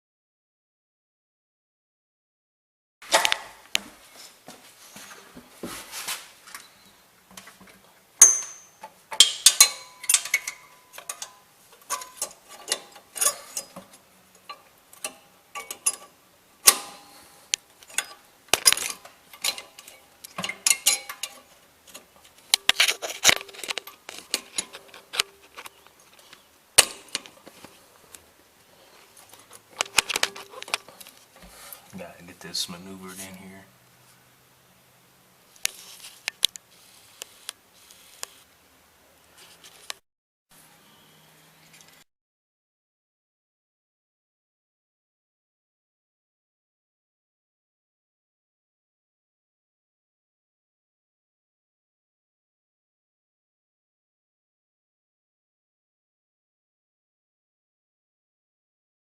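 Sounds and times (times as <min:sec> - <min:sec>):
high metallic ping: 0:08.2 - 0:10.8.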